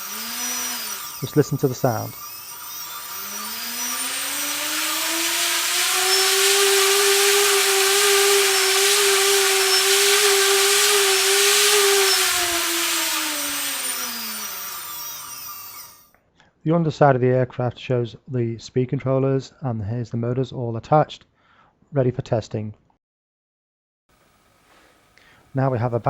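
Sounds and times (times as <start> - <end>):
propeller wash rushing: 0.0 - 15.4
electric motor and propeller whine: 0.0 - 16.0.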